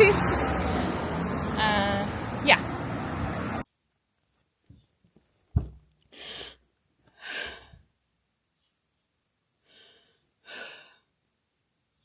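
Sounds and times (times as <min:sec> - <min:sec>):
soft knock: 0:05.5 - 0:05.9.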